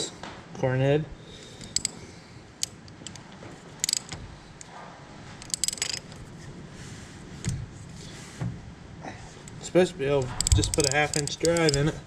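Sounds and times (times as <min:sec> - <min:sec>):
metal hand tools clinking: 0:01.6 - 0:02.0, 0:05.4 - 0:06.2, 0:10.2 - 0:12.0.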